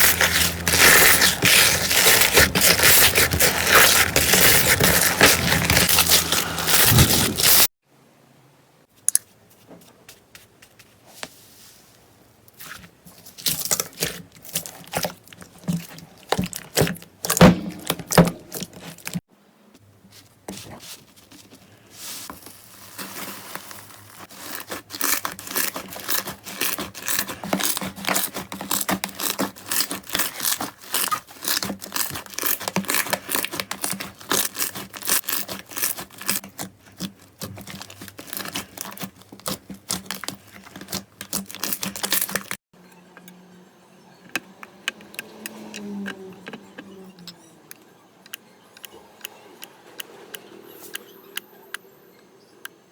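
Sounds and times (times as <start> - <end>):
slime crunch: 0.0 - 7.7, 13.4 - 19.2, 22.9 - 42.5.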